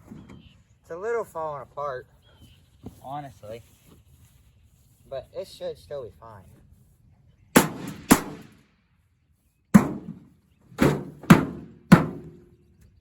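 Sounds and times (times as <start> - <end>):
blows on metal casing: 7.6 - 8.6.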